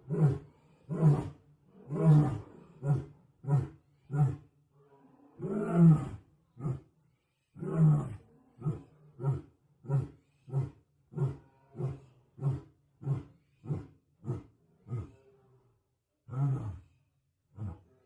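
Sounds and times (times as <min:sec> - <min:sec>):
lion grunts: 0:00.0 - 0:04.5, 0:05.4 - 0:06.9, 0:07.5 - 0:15.6, 0:16.3 - 0:16.8, 0:17.5 - 0:18.0
lion roaring: 0:00.0 - 0:04.5, 0:05.1 - 0:06.9, 0:07.6 - 0:15.6.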